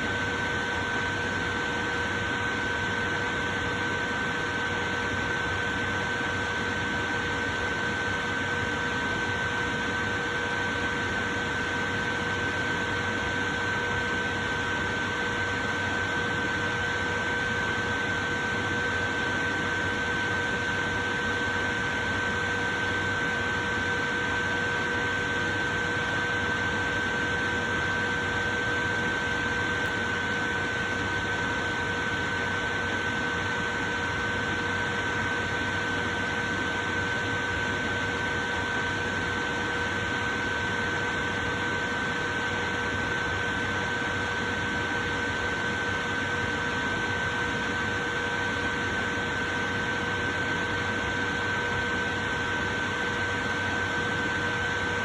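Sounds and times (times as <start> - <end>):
electric fan running: 0.0 - 55.0.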